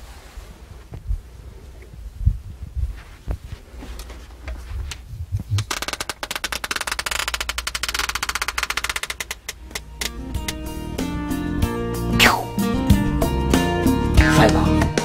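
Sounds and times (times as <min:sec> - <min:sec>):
music: 0:09.6 - 0:15.0.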